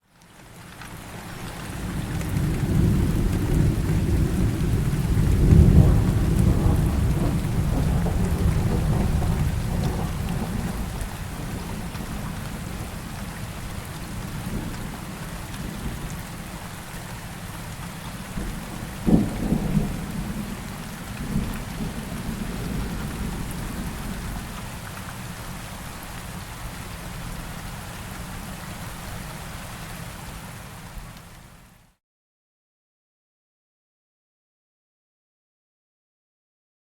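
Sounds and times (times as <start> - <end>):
steady rain: 0.0 - 32.0
thunder rumbling: 1.7 - 13.3, 18.4 - 24.6.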